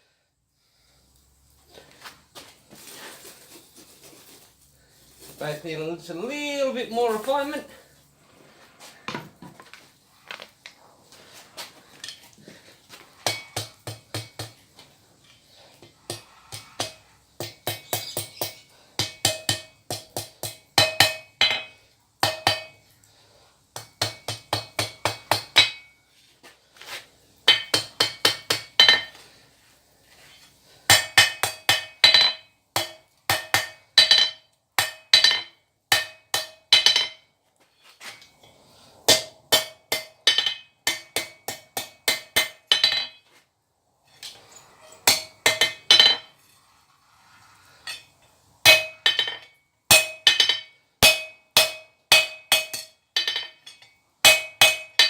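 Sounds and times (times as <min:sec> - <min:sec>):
hammer striking steel on anvil: 0:13.2 - 0:14.6, 0:16.1 - 0:22.8, 0:23.8 - 0:26.0, 0:27.5 - 0:29.2, 0:30.9 - 0:37.3, 0:39.1 - 0:43.2, 0:45.0 - 0:46.3, 0:47.8 - 0:55.0.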